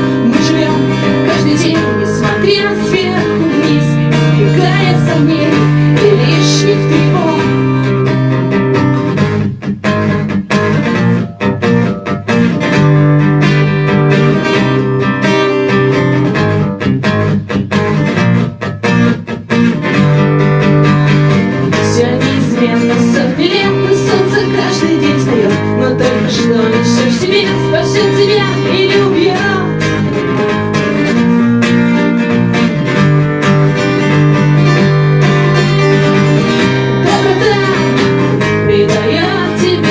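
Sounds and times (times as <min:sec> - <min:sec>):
acoustic guitar strumming: 0:00.0 - 0:39.9.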